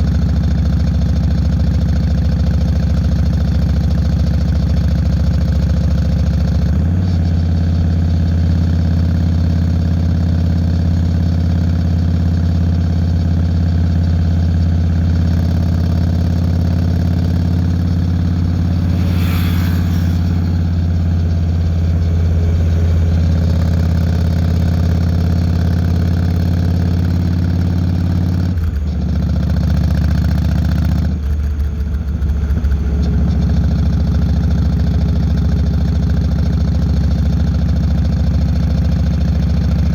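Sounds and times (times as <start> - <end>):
motorcycle engine running: 0.0 - 39.9
short hiss: 17.8 - 21.8.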